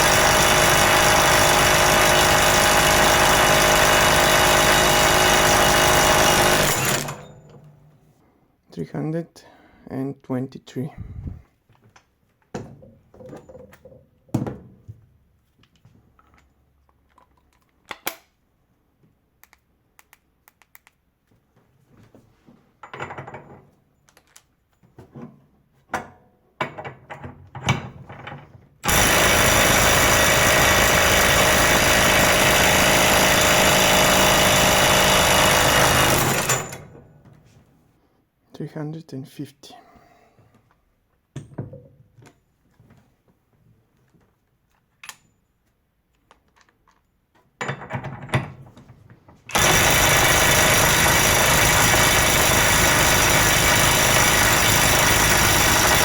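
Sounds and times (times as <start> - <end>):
impact wrench hammering: 28.9 - 36.8, 49.5 - 56.0.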